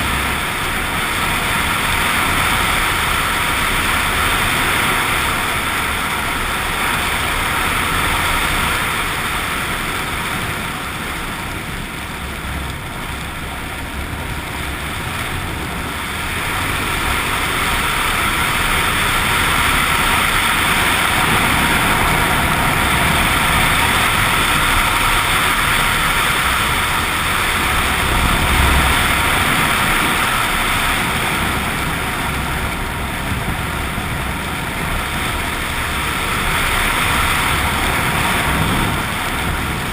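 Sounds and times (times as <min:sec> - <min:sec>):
motorcycle engine running: 0:00.0 - 0:39.9
road noise: 0:00.0 - 0:39.9
wind noise: 0:00.0 - 0:39.9.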